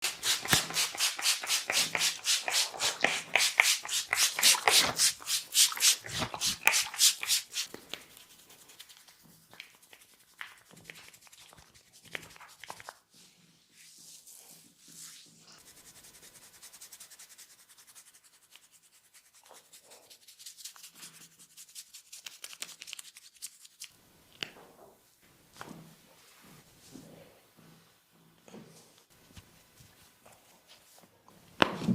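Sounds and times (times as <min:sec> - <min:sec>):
hands rubbing over skin: 0:00.0 - 0:13.0, 0:13.8 - 0:23.9.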